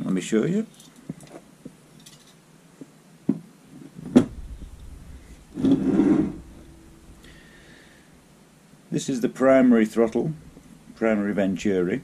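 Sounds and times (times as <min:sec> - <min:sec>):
scraping rustle: 0:03.8 - 0:07.1.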